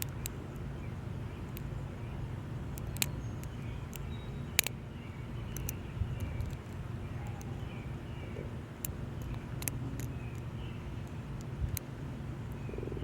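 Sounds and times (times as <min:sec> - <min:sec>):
steady low hum: 0:00.0 - 0:13.0
lock pick metallic clicks: 0:02.7 - 0:04.7, 0:05.5 - 0:07.5, 0:08.8 - 0:10.4.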